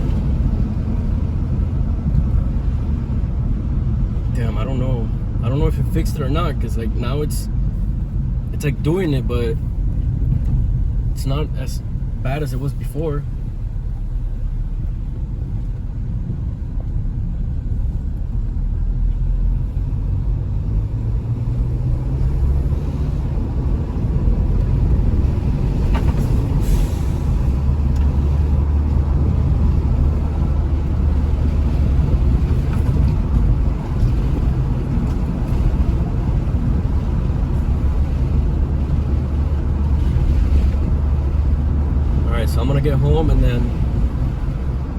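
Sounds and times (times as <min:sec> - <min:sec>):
car engine while driving: 0:00.0 - 0:44.9
road noise: 0:00.0 - 0:44.9.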